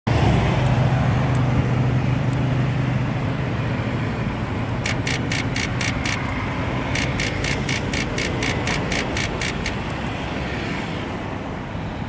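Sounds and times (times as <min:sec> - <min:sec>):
rapid clicking: 0:04.8 - 0:10.0
starter cranking engine: 0:04.8 - 0:10.0.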